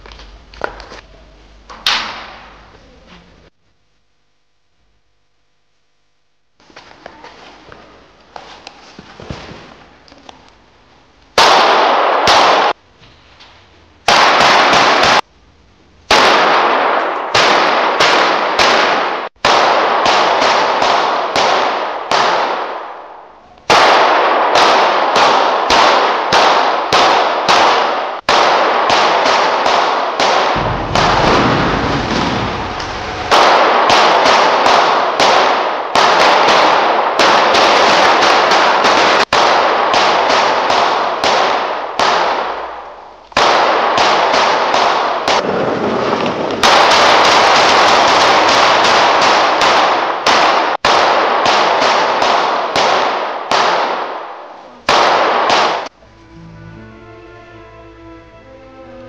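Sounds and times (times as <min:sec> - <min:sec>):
gunshots with ringing tail: 0:11.4 - 0:12.8, 0:14.0 - 0:15.3, 0:16.1 - 0:56.0.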